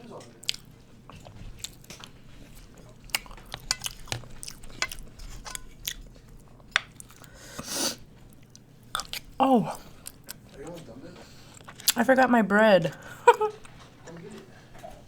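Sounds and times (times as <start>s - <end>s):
rushing breath: 7.2s - 8.0s
wet chewing mouth clicks: 8.4s - 10.6s.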